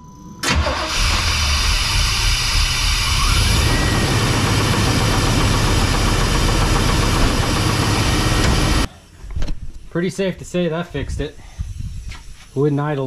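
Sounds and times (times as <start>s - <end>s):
truck engine starting and idling: 0.4s - 8.9s.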